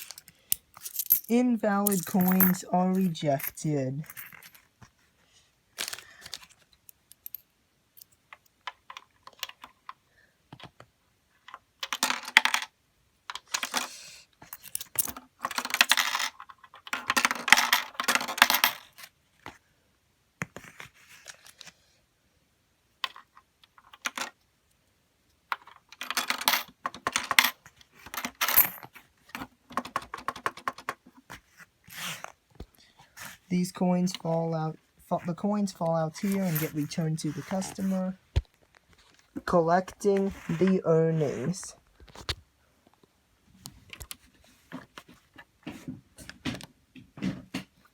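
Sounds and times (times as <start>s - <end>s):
coins clicking and rattling: 0.0s - 4.7s, 13.4s - 19.1s, 25.5s - 28.9s, 36.2s - 38.0s.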